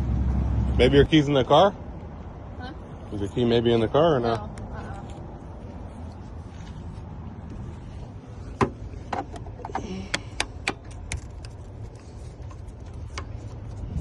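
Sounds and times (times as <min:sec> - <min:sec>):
steady low rumble: 0:10.3 - 0:14.0.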